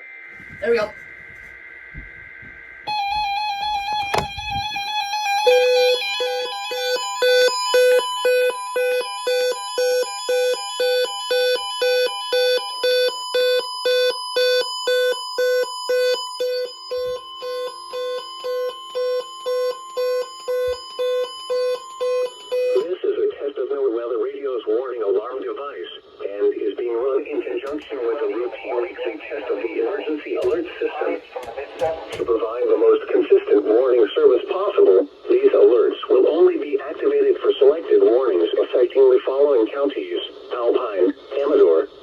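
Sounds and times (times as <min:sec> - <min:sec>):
electronic alarm beeping: 0:00.0 - 0:22.9
steady alarm tone: 0:00.0 - 0:22.9.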